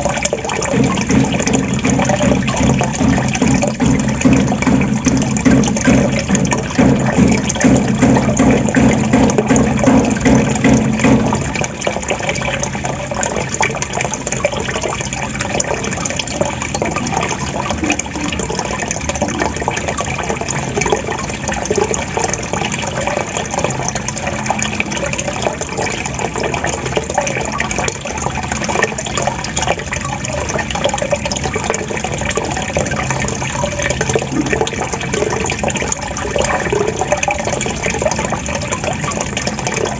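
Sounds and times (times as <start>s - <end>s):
water trickling and gurgling: 0.0s - 39.9s.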